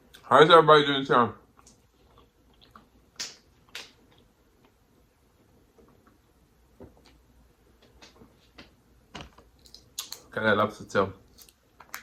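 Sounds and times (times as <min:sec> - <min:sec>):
soft eating squishes: 0:01.4 - 0:07.3, 0:09.2 - 0:10.4, 0:11.2 - 0:12.0.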